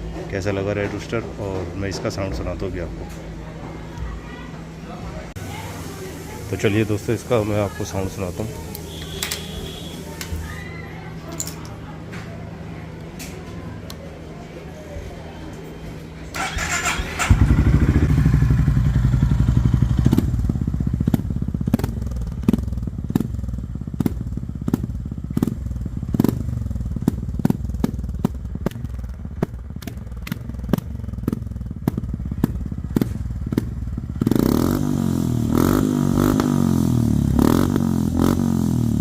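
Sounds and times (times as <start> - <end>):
motorcycle engine idling: 16.4 - 39.0
motorcycle engine revving: 16.4 - 39.0
exhaust pops: 19.3 - 34.5.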